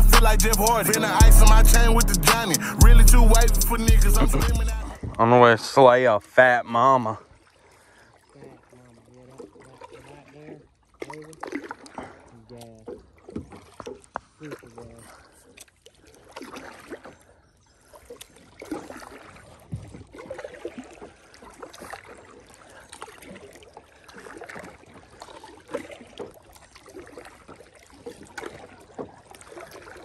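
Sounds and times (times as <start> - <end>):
splashing and trickling water: 0.0 - 30.0
kayak paddle strokes in water: 7.2 - 30.0.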